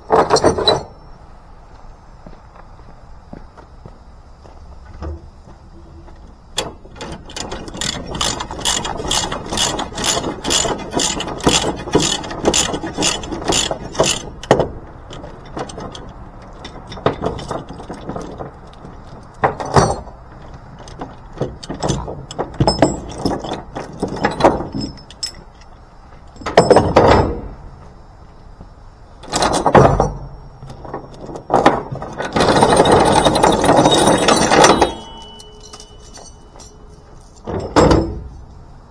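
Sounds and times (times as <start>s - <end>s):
rattling scrapes: 5.1s - 25.6s, 29.2s - 38.9s
ratchet clicking: 6.6s - 14.6s.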